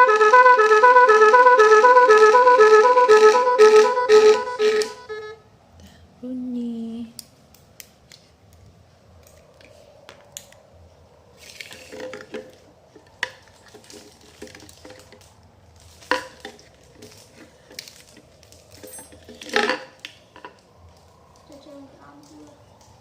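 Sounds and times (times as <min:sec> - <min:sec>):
scraping rustle: 0:11.3 - 0:21.4.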